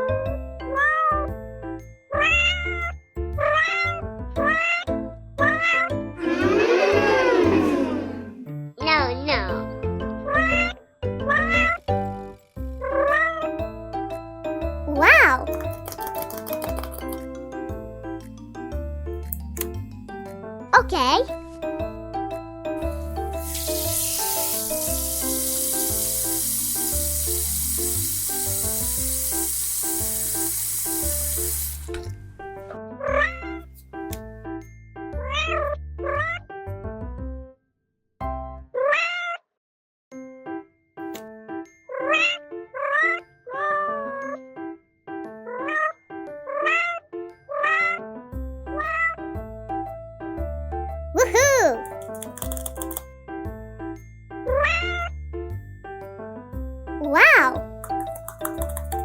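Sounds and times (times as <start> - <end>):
bouncy cartoon music: 0.0 - 29.2, 32.4 - 37.0, 50.9 - 53.8, 54.5 - 55.2, 57.0 - 59.0
cat meowing: 2.2 - 8.1, 33.1 - 33.6, 35.3 - 36.4, 38.8 - 39.4, 42.0 - 43.9, 45.6 - 48.0, 54.5 - 55.1, 57.0 - 57.6
high frying hiss: 23.0 - 32.0.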